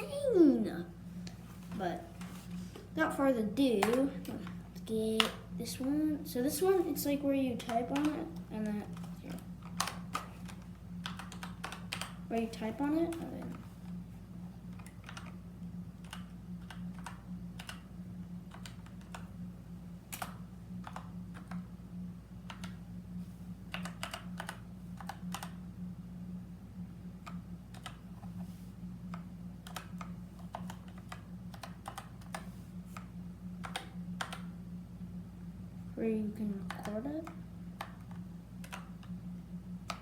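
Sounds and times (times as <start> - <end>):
mechanical keyboard typing: 7.6 - 13.7, 14.7 - 15.4, 16.0 - 17.8, 18.5 - 19.3, 20.1 - 21.7, 22.5 - 22.8, 23.7 - 25.6, 27.2 - 28.0, 29.1 - 34.5, 36.6 - 39.1.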